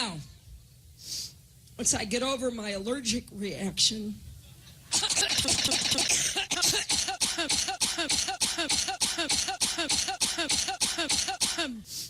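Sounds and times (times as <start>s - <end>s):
woman coughing: 4.9s - 11.9s.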